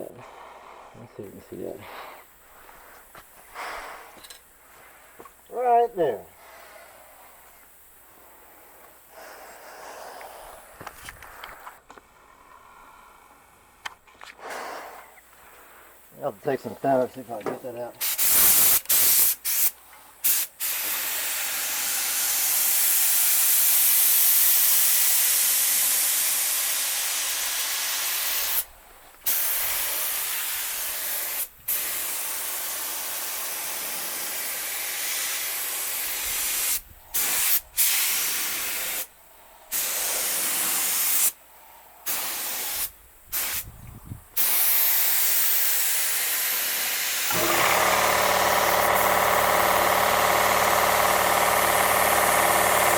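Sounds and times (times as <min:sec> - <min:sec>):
air spray gun hissing: 0:18.0 - 0:39.1, 0:39.7 - 0:41.4, 0:42.0 - 0:43.7, 0:44.4 - 0:52.9.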